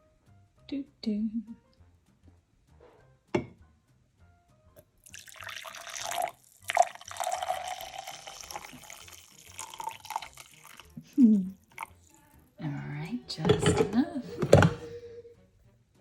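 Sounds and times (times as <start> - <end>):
coffee pouring into mug: 4.8 - 12.5.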